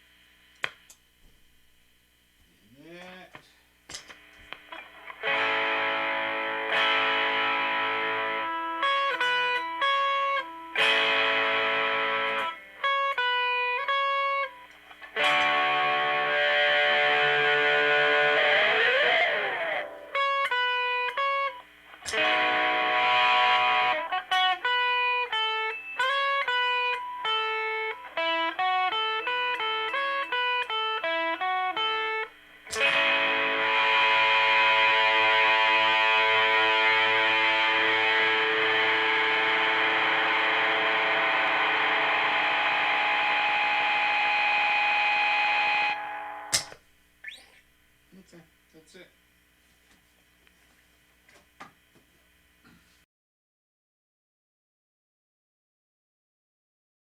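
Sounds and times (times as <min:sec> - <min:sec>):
overdriven electric guitar: 0:03.9 - 0:47.6.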